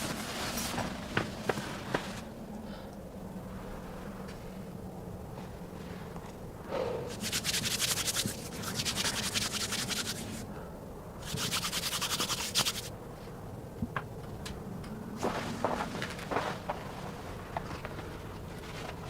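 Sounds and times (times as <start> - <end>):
rhythmic rasping strokes: 7.1 - 10.5, 11.2 - 12.9.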